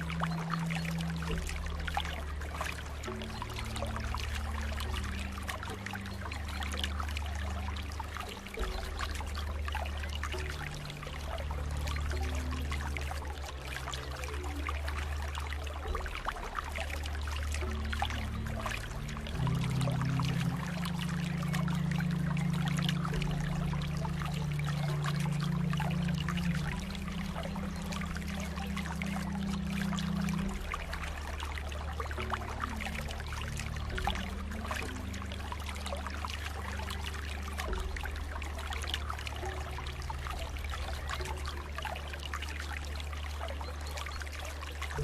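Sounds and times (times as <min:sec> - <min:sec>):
low steady drone: 0:00.0 - 0:45.0
water trickling and pouring: 0:00.0 - 0:45.0.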